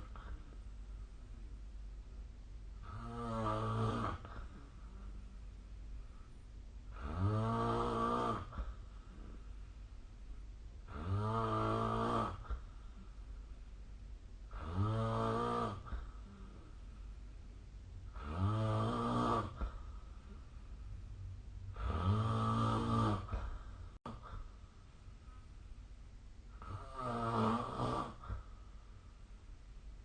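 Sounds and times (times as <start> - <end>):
low buzzing snores: 0.0 - 0.6, 2.7 - 5.3, 6.0 - 9.7, 10.8 - 13.5, 14.4 - 17.1, 18.0 - 20.9, 21.7 - 24.5, 26.5 - 28.7
quiet breathing: 0.0 - 30.0.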